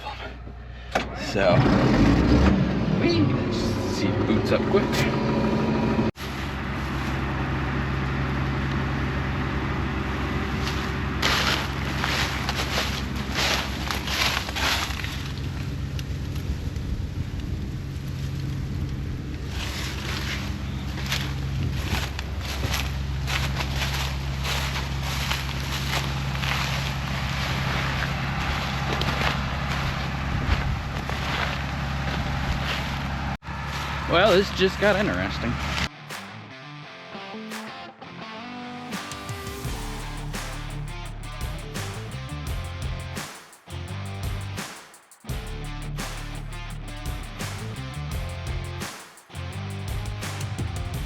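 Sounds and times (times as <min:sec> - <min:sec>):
combine harvester running: 0:00.0 - 0:35.9, 0:39.6 - 0:44.0
diesel engine droning: 0:00.0 - 0:36.2, 0:39.2 - 0:44.6, 0:45.3 - 0:51.0.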